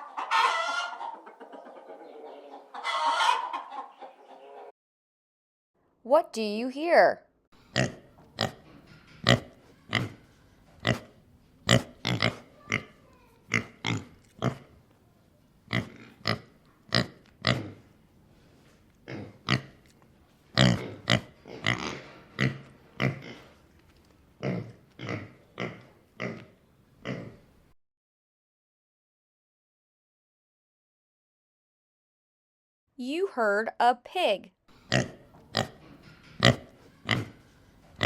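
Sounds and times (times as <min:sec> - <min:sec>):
pig grunting: 0:09.2 - 0:14.7, 0:15.7 - 0:17.9, 0:19.0 - 0:19.8, 0:20.6 - 0:23.6, 0:24.4 - 0:27.4, 0:34.8 - 0:37.4.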